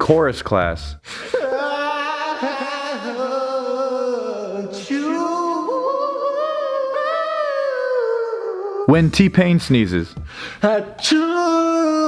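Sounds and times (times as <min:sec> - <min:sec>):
person singing long held notes: 0:01.3 - 0:08.9.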